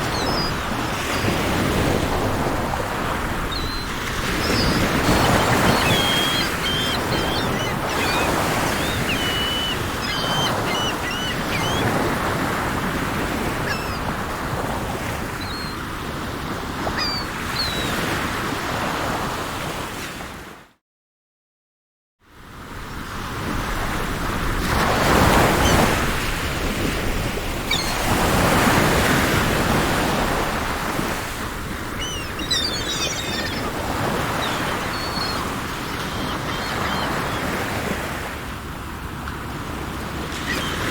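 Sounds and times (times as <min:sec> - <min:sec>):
small birds chirping: 0:00.0 - 0:01.4, 0:03.5 - 0:12.5, 0:13.6 - 0:14.1, 0:31.8 - 0:37.7, 0:40.4 - 0:40.9
sea waves washing: 0:00.0 - 0:17.8, 0:24.6 - 0:40.9.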